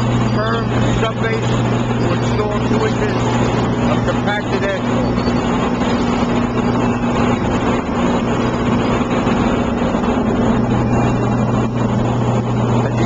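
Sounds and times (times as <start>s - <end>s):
asphalt grinding: 0.0s - 13.0s
engine drone: 0.0s - 13.0s.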